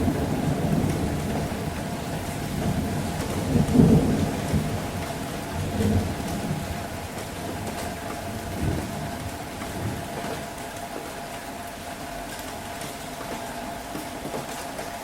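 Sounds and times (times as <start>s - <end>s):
rolling thunder: 0.0s - 7.0s
steady rain falling: 0.0s - 15.0s.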